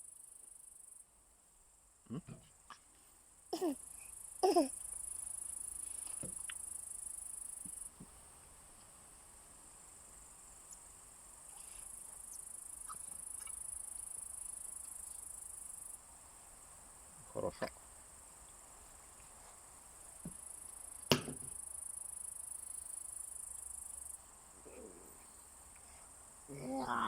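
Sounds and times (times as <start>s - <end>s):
cricket trilling: 3.6s - 8.0s, 9.9s - 16.2s, 20.0s - 27.0s.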